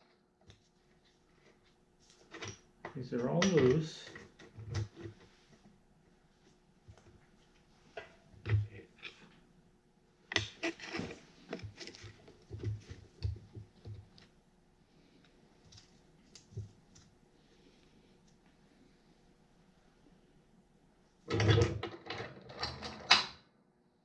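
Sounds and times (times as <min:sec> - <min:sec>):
hand tools clicking and knocking: 0:02.3 - 0:05.1.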